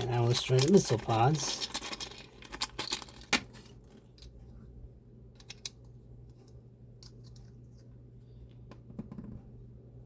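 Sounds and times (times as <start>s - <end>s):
low steady hum: 0.0s - 10.0s
plastic parts clicking: 0.3s - 3.6s, 5.4s - 5.8s.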